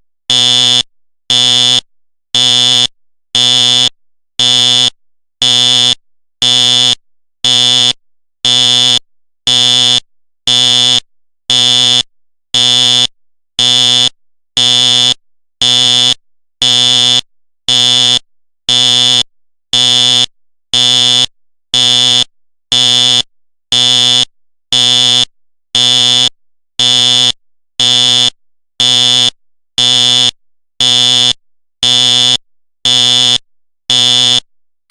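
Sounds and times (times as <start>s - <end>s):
fire alarm buzzing blasts: 0.3s - 1.8s, 2.4s - 2.8s, 3.4s - 5.9s, 6.5s - 6.9s, 8.5s - 10.9s, 11.5s - 12.0s, 12.6s - 13.0s, 13.6s - 15.0s, 15.6s - 17.1s, 17.7s - 19.2s, 19.8s - 20.2s, 20.8s - 21.2s, 21.8s - 22.2s, 22.8s - 23.2s, 23.8s - 24.2s, 24.8s - 25.2s, 25.8s - 27.2s, 27.8s - 34.4s.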